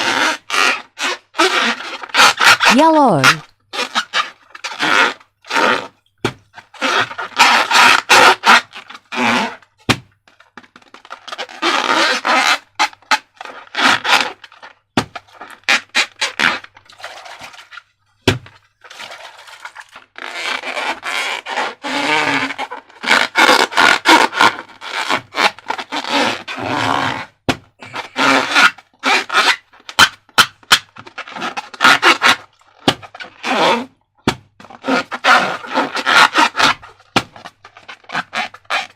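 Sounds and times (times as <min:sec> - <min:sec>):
wet squishing and scraping: 0:10.6 - 0:27.0, 0:31.0 - 0:38.9.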